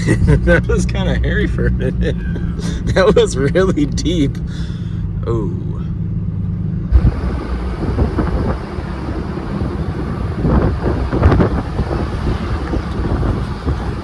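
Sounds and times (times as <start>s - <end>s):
truck rumbling over rough ground: 0.0s - 14.0s
wind buffeting microphone: 6.9s - 14.0s.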